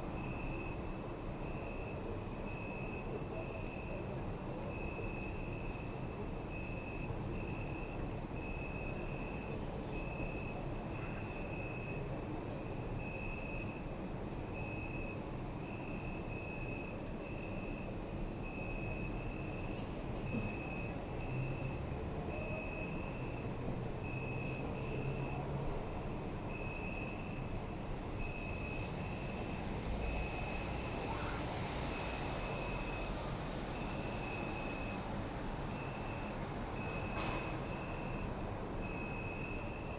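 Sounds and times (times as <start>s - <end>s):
high-pitched insect trill: 0.0s - 39.9s
cricket chirping in short pulses: 14.6s - 39.9s.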